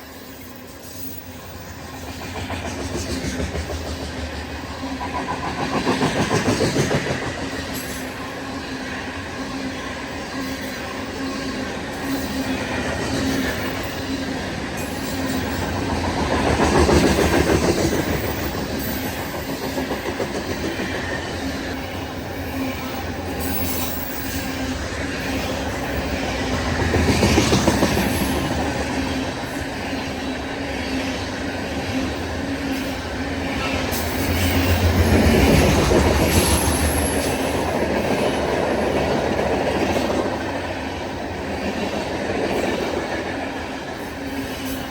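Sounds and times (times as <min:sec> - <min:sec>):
train wheels clacking over rail joints: 0:02.0 - 0:08.1.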